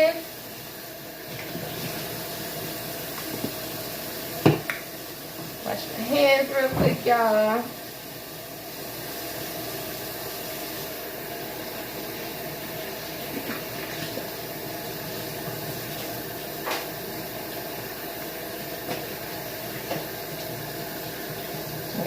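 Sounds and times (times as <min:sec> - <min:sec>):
tap running into sink: 0:03.1 - 0:03.7, 0:04.4 - 0:05.6, 0:18.8 - 0:20.6.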